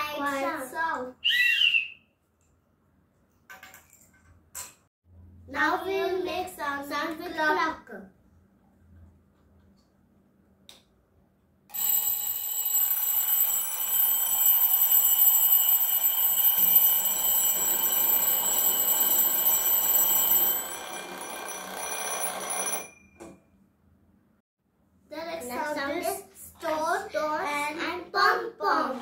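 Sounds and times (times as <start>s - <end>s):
alarm clock ringing: 11.7s - 23.3s.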